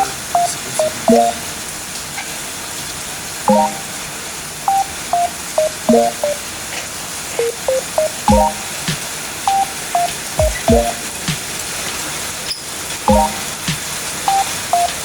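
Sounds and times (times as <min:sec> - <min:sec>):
simple electronic melody: 0:00.0 - 0:01.5, 0:03.5 - 0:04.0, 0:04.7 - 0:06.5, 0:07.4 - 0:11.4, 0:13.1 - 0:15.0
steady hiss: 0:00.0 - 0:15.0.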